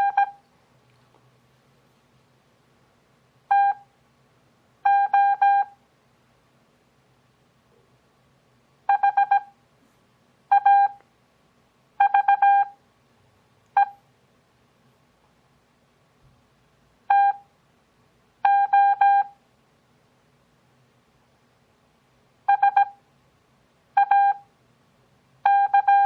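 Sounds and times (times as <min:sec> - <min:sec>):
morse code beeps: 0:00.0 - 0:00.4, 0:03.5 - 0:03.8, 0:04.9 - 0:05.8, 0:08.9 - 0:09.5, 0:10.5 - 0:11.0, 0:12.0 - 0:12.8, 0:13.8 - 0:14.0, 0:17.1 - 0:17.4, 0:18.5 - 0:19.3, 0:22.5 - 0:23.0, 0:24.0 - 0:24.4, 0:25.5 - 0:26.0.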